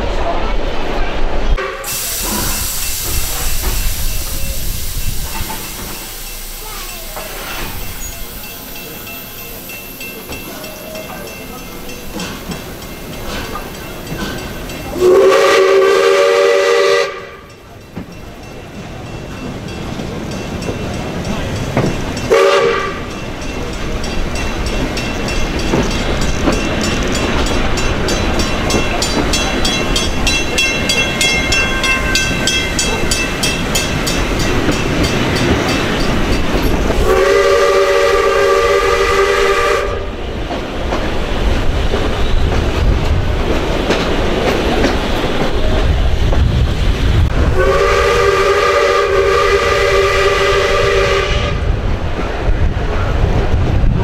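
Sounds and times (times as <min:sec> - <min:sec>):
train clickety-clack on rails: 0:00.0 - 0:54.0
steam locomotive whistle: 0:01.6 - 0:06.6, 0:14.9 - 0:17.6, 0:22.3 - 0:23.2, 0:37.0 - 0:40.2, 0:47.5 - 0:51.7.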